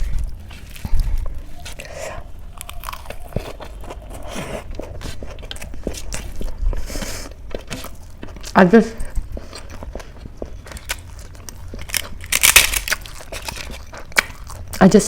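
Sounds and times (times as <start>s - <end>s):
crunchy bites and chewing: 0.0s - 14.8s.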